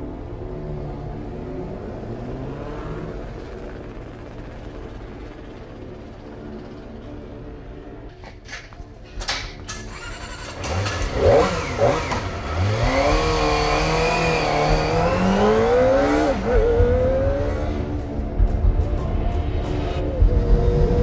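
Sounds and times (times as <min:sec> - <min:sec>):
motorcycle engine revving: 0:09.7 - 0:18.2.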